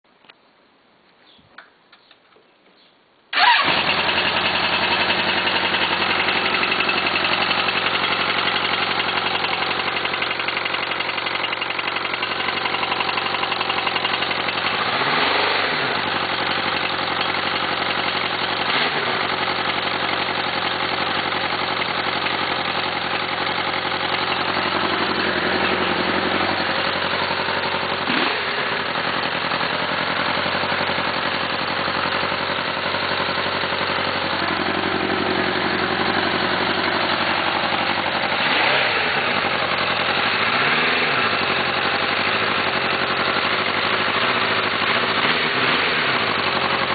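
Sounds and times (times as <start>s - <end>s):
motorcycle engine running and revving: 3.4s - 46.9s.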